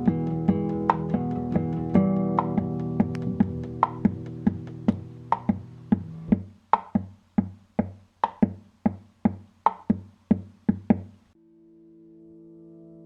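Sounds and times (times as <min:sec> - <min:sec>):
low bass line: 0:00.0 - 0:06.4
drum-machine beat: 0:00.1 - 0:11.2.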